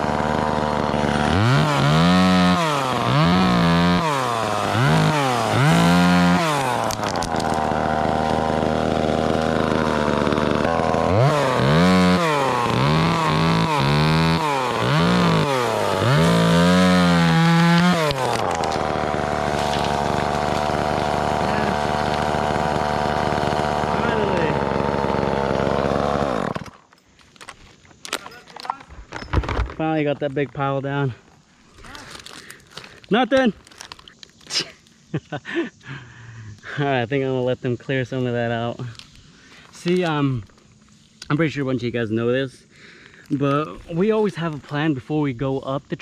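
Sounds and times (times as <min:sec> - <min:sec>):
chainsaw revving: 0:00.0 - 0:26.8.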